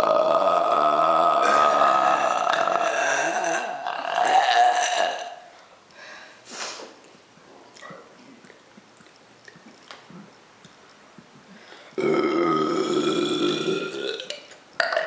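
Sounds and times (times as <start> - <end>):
person burping loudly: 0.0 - 5.5, 12.0 - 15.0.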